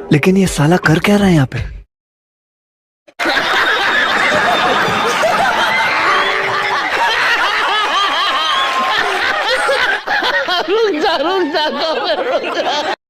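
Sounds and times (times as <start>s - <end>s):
group of people laughing: 3.2s - 13.0s.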